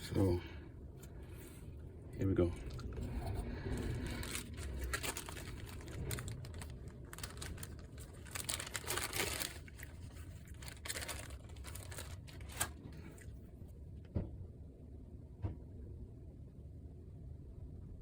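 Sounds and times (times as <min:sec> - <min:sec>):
hands rustling and scraping: 0:02.6 - 0:13.4.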